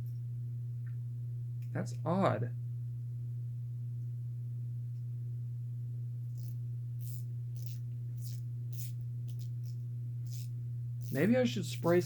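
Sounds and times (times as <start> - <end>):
steady low hum: 0.0 - 12.0
wrench ratchet clicks: 6.4 - 12.0.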